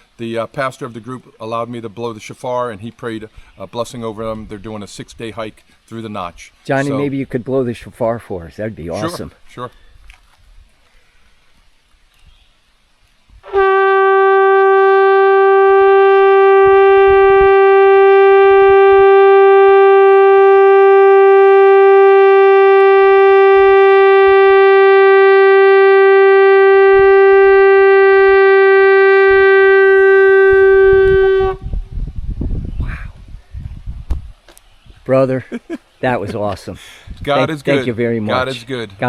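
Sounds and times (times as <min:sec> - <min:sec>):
shofar long steady note: 0:13.4 - 0:31.9.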